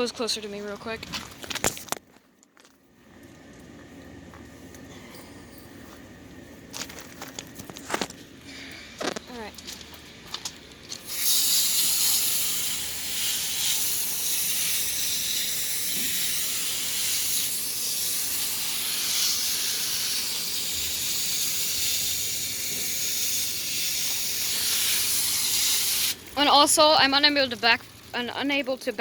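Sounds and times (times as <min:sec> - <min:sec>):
hose nozzle spraying water: 0:11.0 - 0:28.6.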